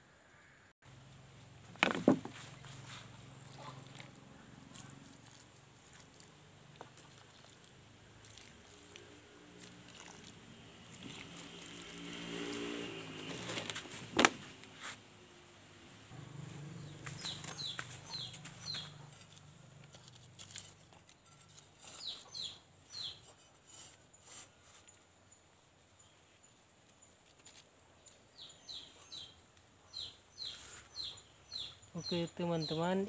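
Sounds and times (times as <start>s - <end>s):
low hum: 15.2s - 20.9s
falling bird chirps: 16.8s - 19.1s.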